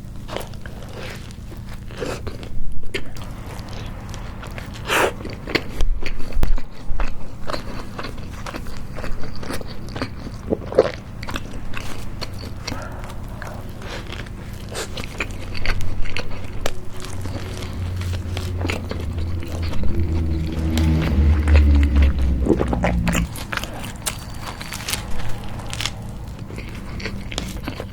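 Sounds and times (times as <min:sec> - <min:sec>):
chewing and crunching burger: 0:00.0 - 0:27.9
low hum: 0:10.3 - 0:27.9.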